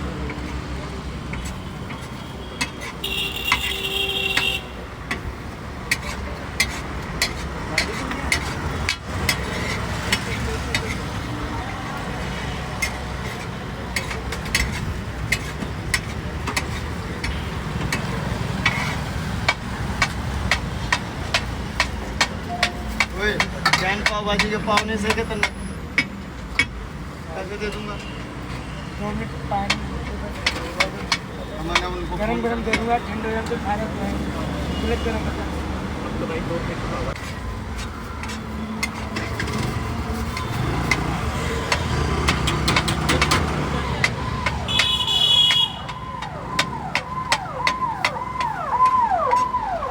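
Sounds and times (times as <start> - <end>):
road traffic rumble: 0.0 - 49.9
metal spatula scraping iron griddle: 5.9 - 11.0, 12.8 - 17.4, 18.0 - 19.2, 37.2 - 41.1.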